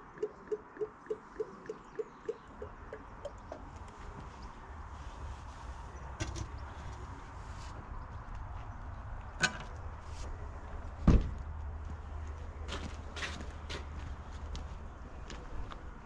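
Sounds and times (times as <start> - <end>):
heavy low thump: 11.0 - 11.4.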